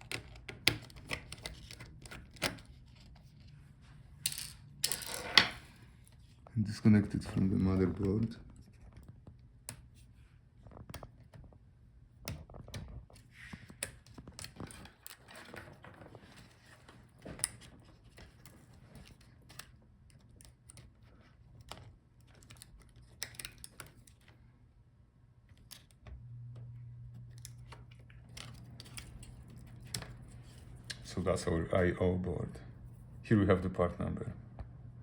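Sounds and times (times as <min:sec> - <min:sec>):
low steady hum: 0:00.0 - 0:35.0
hands clicking inside a laptop: 0:10.6 - 0:15.1.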